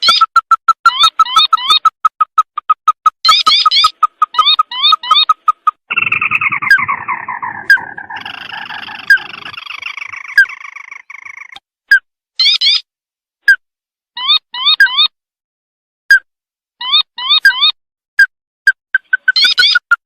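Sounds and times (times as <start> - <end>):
bird call chattering: 0.0 - 11.6, 19.0 - 20.0.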